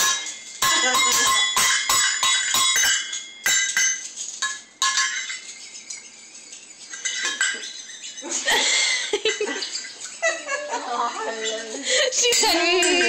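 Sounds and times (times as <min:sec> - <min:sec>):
small hard objects clinking: 0:00.0 - 0:08.1.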